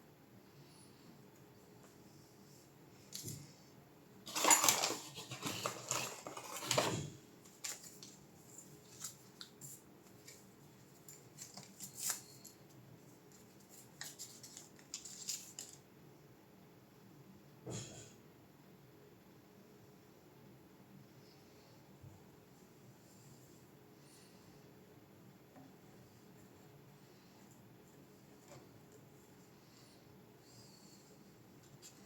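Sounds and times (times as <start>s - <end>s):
scraping and rustling: 4.3s - 12.6s.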